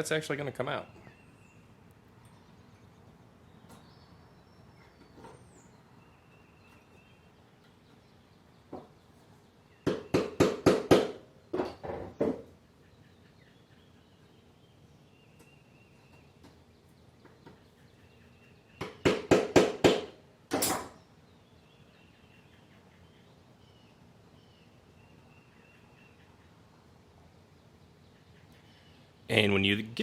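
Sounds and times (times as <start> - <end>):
sharp scraping knocks on metal: 9.8 - 12.5, 18.8 - 21.0.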